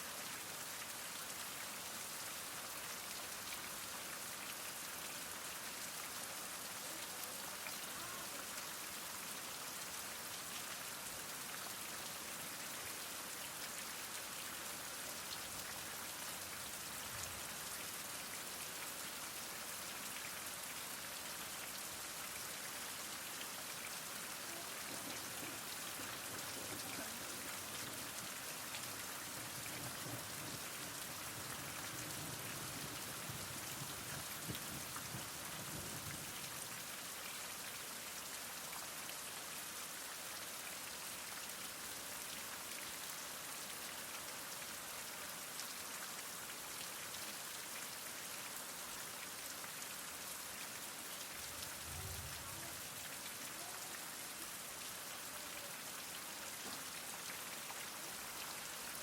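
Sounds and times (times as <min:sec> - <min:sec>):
heavy rain falling: 0:04.4 - 0:20.6, 0:21.2 - 0:37.2, 0:50.4 - 0:59.0.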